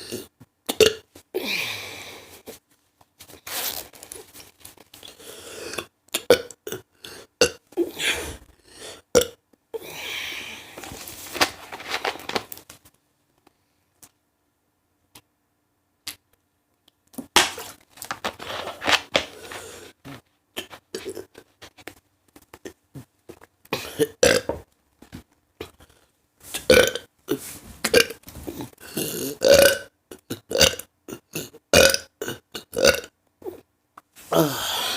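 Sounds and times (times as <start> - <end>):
woman burping: 23.7 - 24.6, 27.9 - 33.6.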